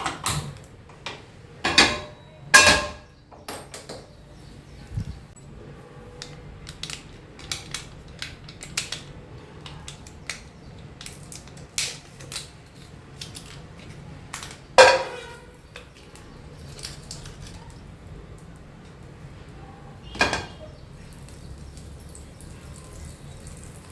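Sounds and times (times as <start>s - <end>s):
dishes and utensils clicking: 0.0s - 4.1s, 13.3s - 16.0s, 20.0s - 20.8s
loud ringing clank: 1.7s - 3.1s.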